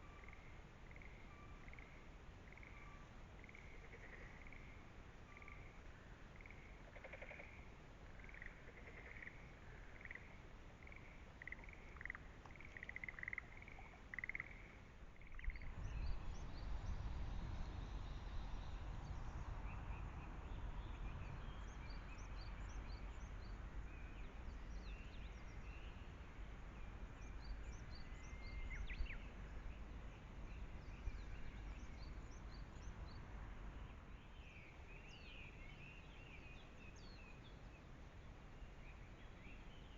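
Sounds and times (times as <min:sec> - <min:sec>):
repeated animal calls: 0:06.4 - 0:15.6.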